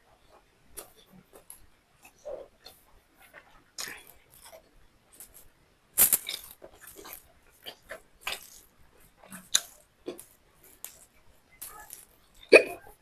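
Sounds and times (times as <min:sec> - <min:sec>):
wet chewing and lip smacks: 0:06.1 - 0:12.5.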